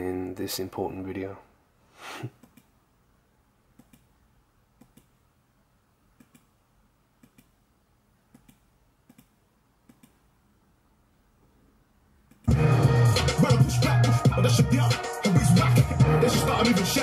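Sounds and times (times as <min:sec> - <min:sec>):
faint computer clicking: 0:02.3 - 0:02.8, 0:03.7 - 0:05.2, 0:06.1 - 0:07.6, 0:08.2 - 0:10.3, 0:12.2 - 0:12.5.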